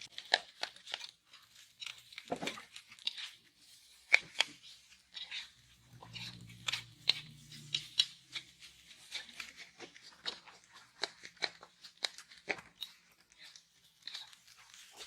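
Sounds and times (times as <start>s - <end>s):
spatula scraping a frying pan: 5.1s - 10.2s.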